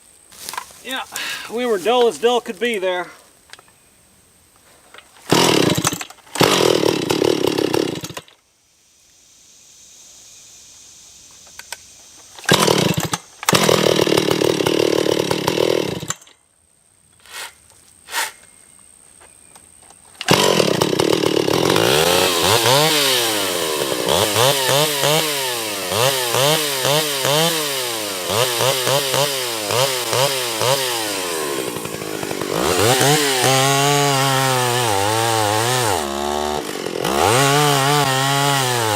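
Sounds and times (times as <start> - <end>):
chainsaw running: 5.3 - 8.4, 12.4 - 16.3, 20.2 - 38.9.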